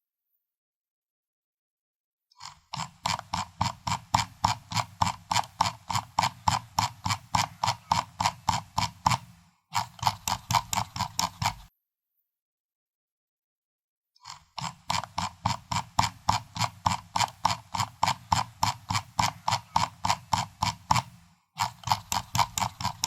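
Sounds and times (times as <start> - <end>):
mouse scroll wheel clicking: 2.4 - 11.7, 14.2 - 23.0.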